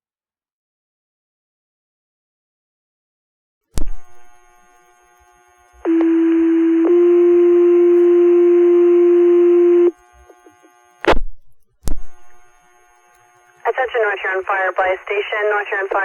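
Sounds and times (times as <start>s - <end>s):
radio hiss: 13.4s - 16.0s.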